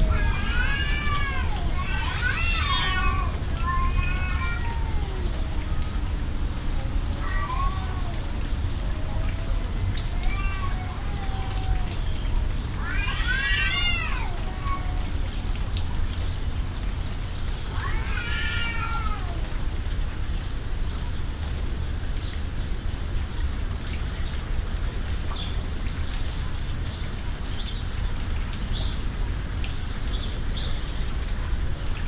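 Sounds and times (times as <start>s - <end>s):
low rumble: 0.0s - 1.9s
cat yowling: 0.0s - 6.1s, 6.8s - 12.1s, 12.8s - 15.2s, 17.6s - 19.5s
raindrop ticks: 0.0s - 32.0s
steady rain: 0.0s - 32.0s.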